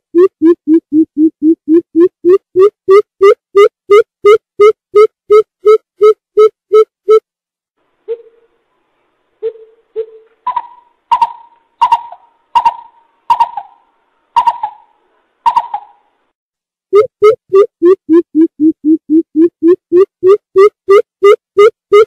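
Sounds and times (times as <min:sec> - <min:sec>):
bird hooting: 0:08.1 - 0:08.6, 0:09.4 - 0:16.0.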